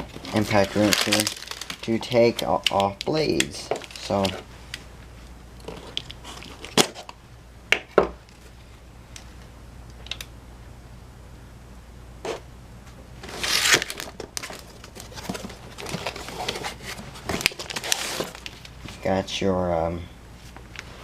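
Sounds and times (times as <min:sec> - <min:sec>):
crinkling paper and plastic: 0:00.0 - 0:04.9, 0:05.6 - 0:07.2, 0:13.2 - 0:19.1.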